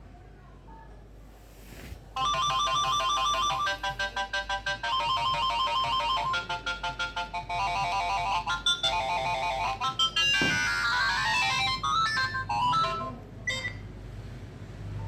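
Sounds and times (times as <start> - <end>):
phone ringtone melody: 2.2 - 13.9.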